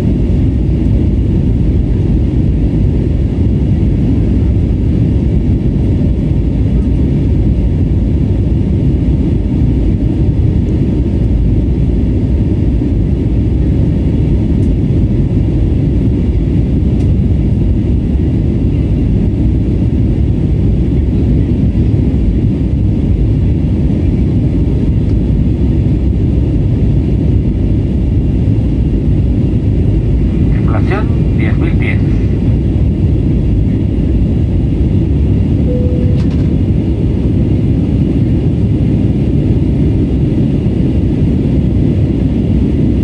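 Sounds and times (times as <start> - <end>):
airplane cabin drone: 0.0 - 43.0
faint high whine: 35.6 - 38.0.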